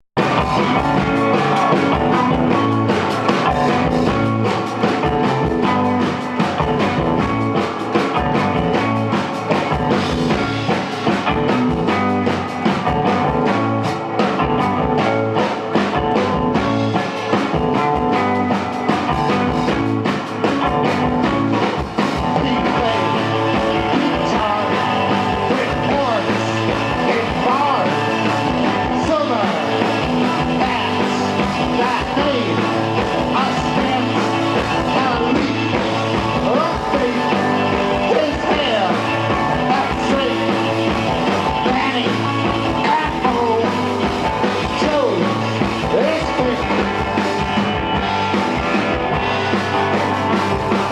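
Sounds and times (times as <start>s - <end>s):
rock band playing live: 0.2s - 50.9s
person singing: 22.2s - 47.6s.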